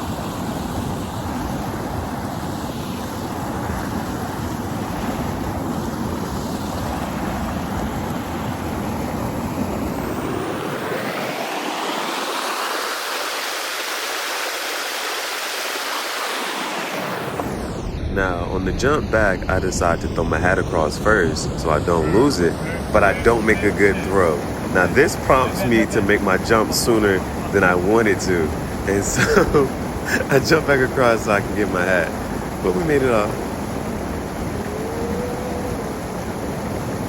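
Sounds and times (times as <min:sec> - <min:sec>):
waterfall rushing: 0:09.9 - 0:17.9, 0:19.8 - 0:37.0.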